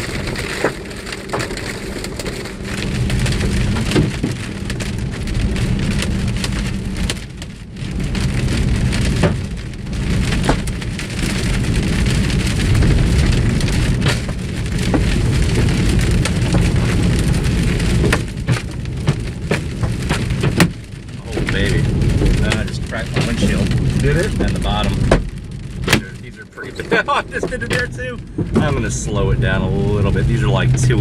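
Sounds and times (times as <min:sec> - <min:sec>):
hailstones pelting vehicle roof: 0:00.0 - 0:31.0
moving vehicle low rumble: 0:00.0 - 0:31.0.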